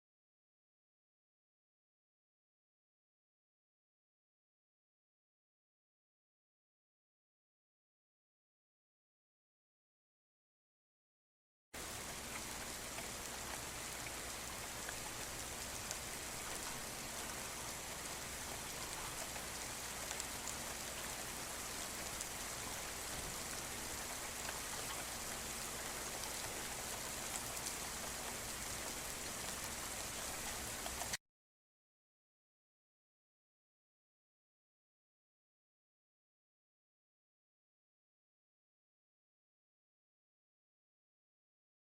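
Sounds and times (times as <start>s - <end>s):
steady rain falling: 11.8s - 31.2s.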